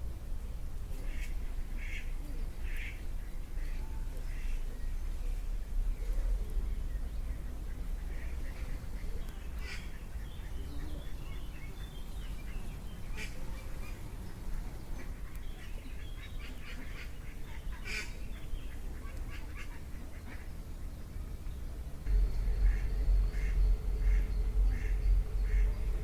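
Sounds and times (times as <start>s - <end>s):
ducks quacking: 15.0s - 20.6s, 22.0s - 26.0s
low rumble: 20.7s - 26.0s.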